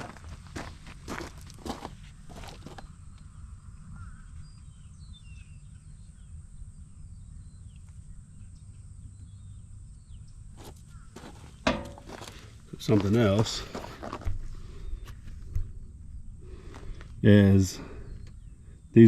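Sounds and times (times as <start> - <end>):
faint bird chirps: 2.3 - 11.6, 16.1 - 19.0
short knocks: 11.6 - 12.2
low background rumble: 13.7 - 19.0.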